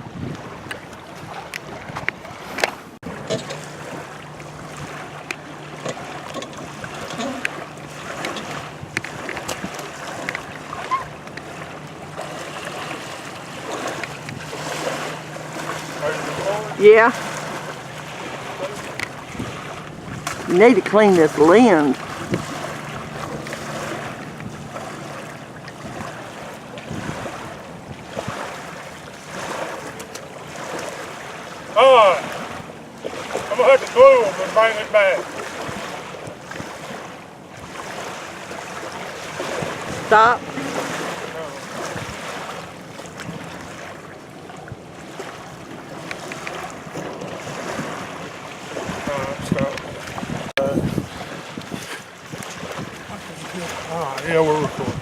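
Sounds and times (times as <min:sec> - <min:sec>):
water lapping and splashing: 0:00.0 - 0:55.0
wind buffeting microphone: 0:00.0 - 0:55.0
faint water ticks: 0:05.2 - 0:11.6, 0:18.8 - 0:20.6, 0:46.0 - 0:47.3.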